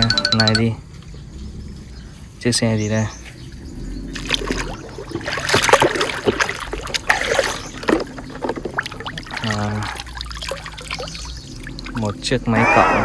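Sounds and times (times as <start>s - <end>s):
water splashing and trickling: 4.0s - 12.6s.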